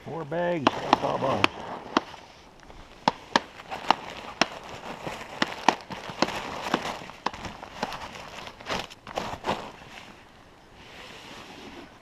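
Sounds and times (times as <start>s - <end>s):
bags crinkling and clicking: 3.2s - 9.9s.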